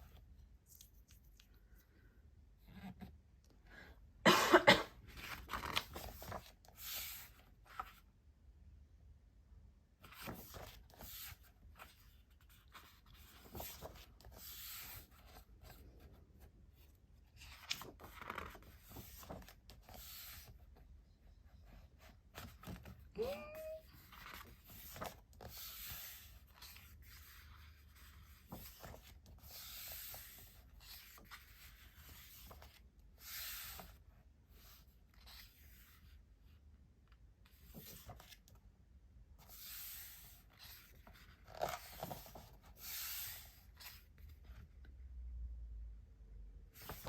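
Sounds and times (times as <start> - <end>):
book pages turning: 0.0 - 1.8, 5.1 - 8.1, 10.0 - 16.1, 17.3 - 20.6, 22.2 - 36.0, 39.4 - 44.2, 46.8 - 47.0
paper rustling and sliding: 5.0 - 8.1, 10.0 - 16.2, 17.3 - 20.7, 23.8 - 36.1, 37.5 - 38.6, 39.4 - 44.3, 46.8 - 47.0.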